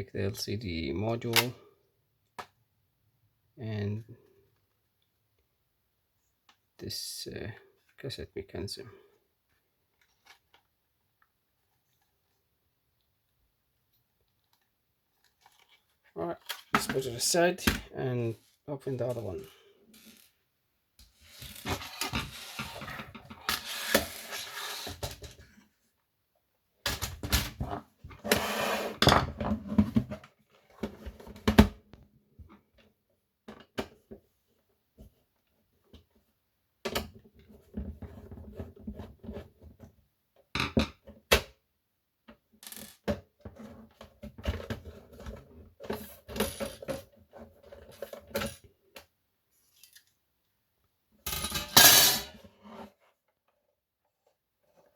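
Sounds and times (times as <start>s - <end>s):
rustling and scraping: 21.0s - 25.7s.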